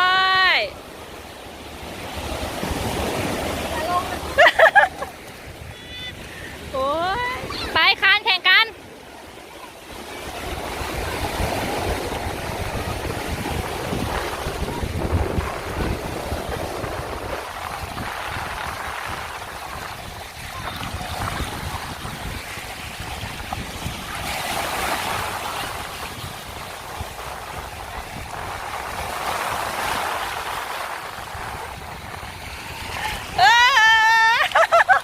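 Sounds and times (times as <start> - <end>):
waves washing onto sandy beach: 0.0 - 35.0
wind rumbling on microphone: 9.9 - 35.0.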